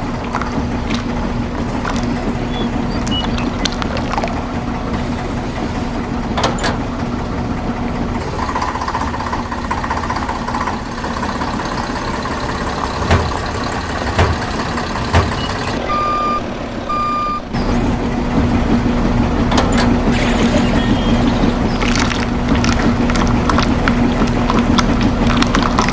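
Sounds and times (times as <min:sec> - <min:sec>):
toy truck motor humming: 0:00.0 - 0:15.8
short knocks: 0:12.4 - 0:15.8
reversing beeps: 0:12.7 - 0:17.6.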